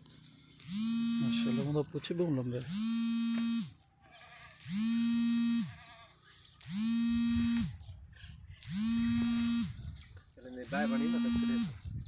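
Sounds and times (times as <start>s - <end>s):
electric buzzing tone: 0.6s - 1.8s, 2.6s - 3.8s, 4.6s - 5.9s, 6.6s - 7.9s, 8.6s - 10.0s, 10.6s - 12.0s.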